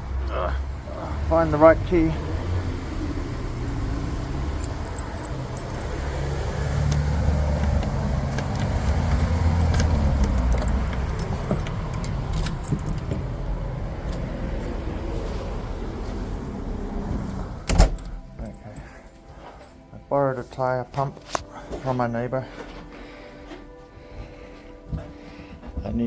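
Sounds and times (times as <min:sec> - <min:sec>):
vehicle passing: 0:00.0 - 0:20.0
road traffic rumble: 0:00.0 - 0:25.3
keys jangling: 0:04.0 - 0:14.6, 0:17.7 - 0:19.9.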